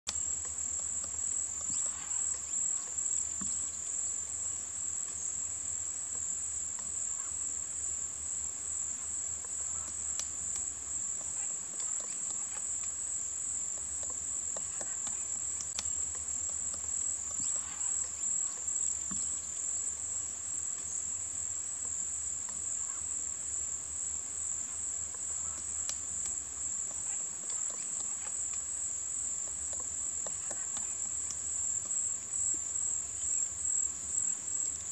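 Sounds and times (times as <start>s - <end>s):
insects chirping chorus: 0.1s - 34.9s
faint clicks: 9.4s - 13.0s, 13.7s - 19.6s, 25.1s - 28.7s, 29.4s - 32.6s.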